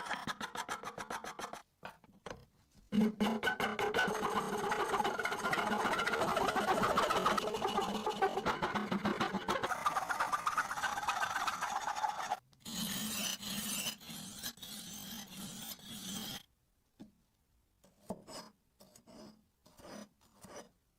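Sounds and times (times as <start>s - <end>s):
knife rasping on abrasive: 3.0s - 16.5s.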